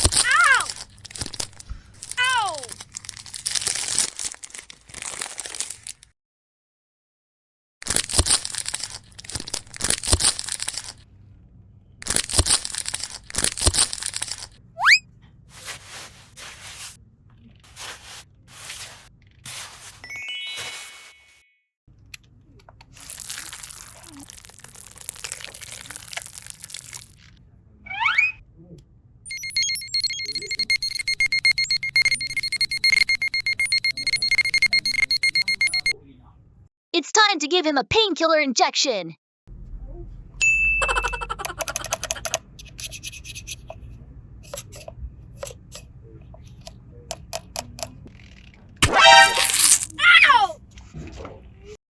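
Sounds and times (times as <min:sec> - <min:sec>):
crinkling and tearing: 0:02.8 - 0:06.0, 0:22.9 - 0:27.3, 0:49.1 - 0:50.0
high-pitched electronic beeping alarm: 0:14.8 - 0:15.0, 0:29.3 - 0:36.0, 0:48.9 - 0:49.9.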